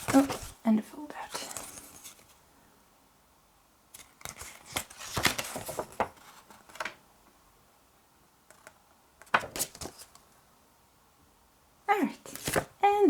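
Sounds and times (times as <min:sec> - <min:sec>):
paper rustling and crinkling: 0:00.0 - 0:00.6, 0:01.2 - 0:02.4, 0:04.0 - 0:07.0, 0:08.6 - 0:10.2, 0:12.2 - 0:12.8.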